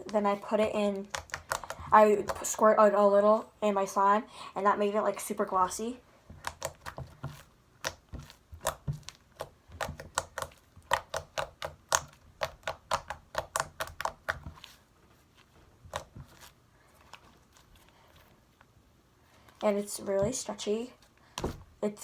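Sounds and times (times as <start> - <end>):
slime squished by hand: 6.4 - 14.8.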